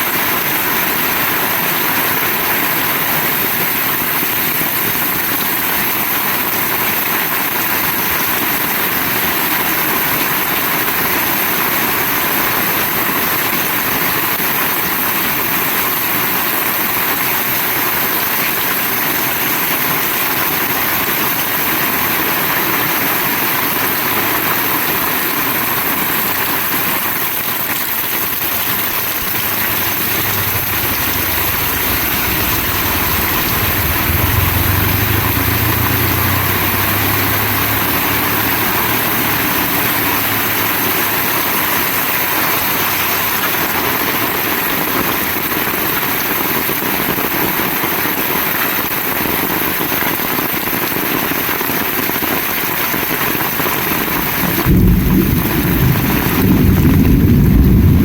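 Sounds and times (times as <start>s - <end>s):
heavy rain falling: 0.0s - 58.0s
low rumble: 29.0s - 42.1s, 54.2s - 58.0s.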